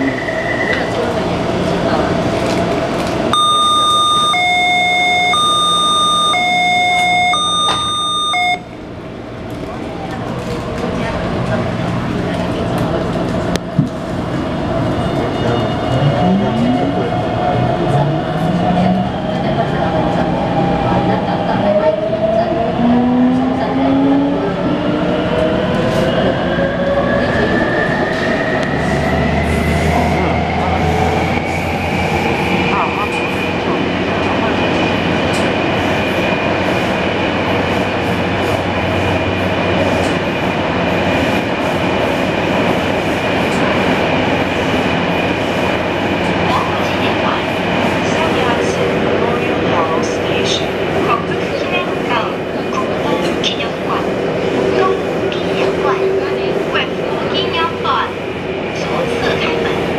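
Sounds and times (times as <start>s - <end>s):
train noise: 0.0s - 59.9s
electronic two-tone door warning: 3.3s - 8.7s
train traction inverter whine: 3.3s - 9.8s.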